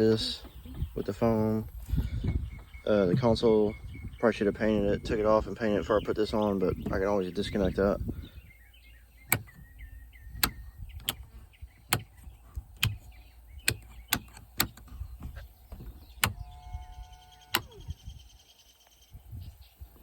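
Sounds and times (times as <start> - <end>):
sharp clicks or knocks: 9.3 - 9.6, 10.3 - 16.4.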